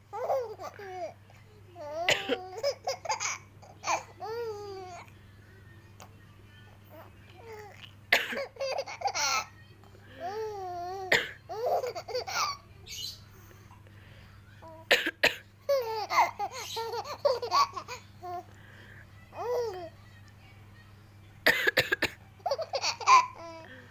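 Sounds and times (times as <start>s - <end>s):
baby laughing: 0.1s - 1.2s, 1.8s - 5.0s, 7.5s - 9.5s, 10.2s - 12.6s, 15.7s - 18.4s, 22.4s - 23.7s
woman coughing: 2.0s - 2.7s, 8.1s - 8.6s, 11.1s - 11.5s, 14.9s - 15.5s, 21.4s - 22.2s.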